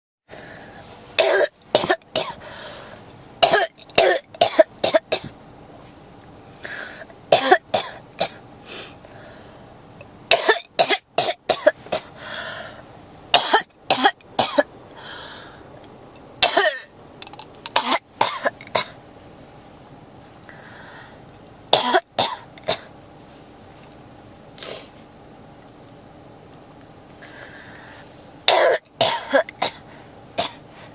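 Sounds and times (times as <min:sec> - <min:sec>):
breathing: 0:00.3 - 0:01.1, 0:02.4 - 0:03.1, 0:06.6 - 0:07.1, 0:08.6 - 0:09.7, 0:12.2 - 0:12.9, 0:15.0 - 0:15.7, 0:20.4 - 0:21.2, 0:27.2 - 0:28.2, 0:29.8 - 0:30.9
person coughing: 0:01.2 - 0:02.4, 0:03.4 - 0:05.3, 0:07.3 - 0:08.4, 0:10.3 - 0:12.1, 0:13.4 - 0:14.7, 0:16.4 - 0:16.9, 0:17.7 - 0:19.0, 0:21.8 - 0:22.9, 0:28.5 - 0:29.8, 0:30.4 - 0:30.6.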